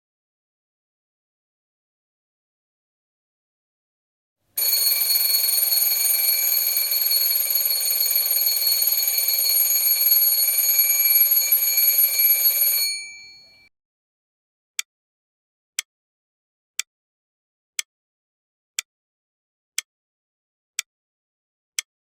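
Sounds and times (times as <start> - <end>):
alarm clock ringing: 4.6 - 13.7.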